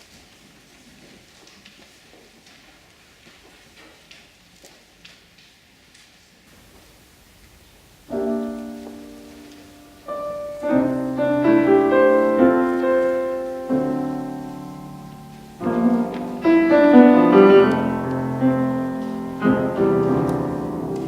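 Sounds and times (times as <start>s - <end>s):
piano chords and melody: 8.0s - 21.0s.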